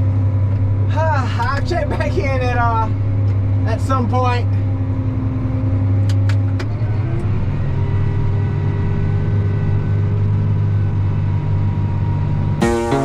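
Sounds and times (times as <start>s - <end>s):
tractor engine droning: 7.2s - 13.0s
plucked string music: 12.6s - 13.0s.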